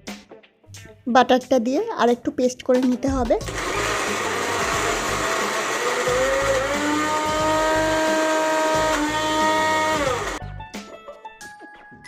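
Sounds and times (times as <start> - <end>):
mixer grinder motor whine: 3.4 - 10.4.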